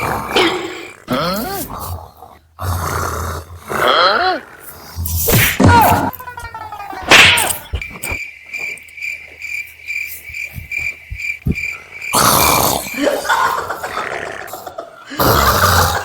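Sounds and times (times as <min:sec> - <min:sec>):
loud snoring: 0:00.0 - 0:05.3, 0:12.1 - 0:16.0
crickets chirping: 0:06.0 - 0:16.0.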